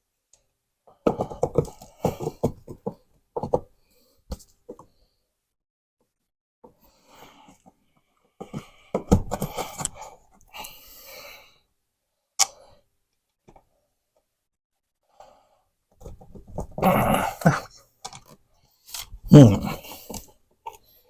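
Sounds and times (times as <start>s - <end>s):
scraping and knocking on drywall: 1.0s - 3.7s.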